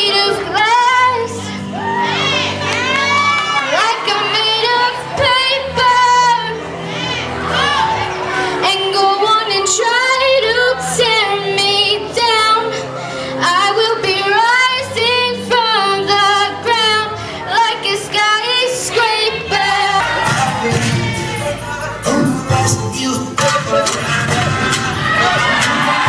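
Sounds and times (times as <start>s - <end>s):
high voice singing: 13.4s - 26.0s.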